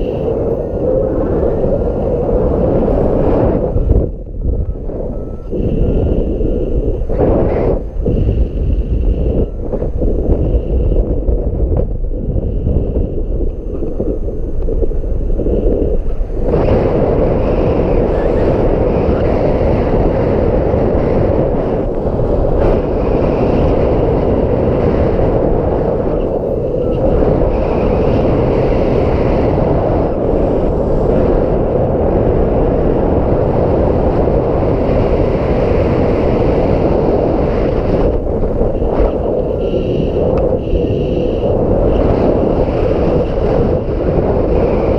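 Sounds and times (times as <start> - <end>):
wind buffeting microphone: 0.0 - 44.9.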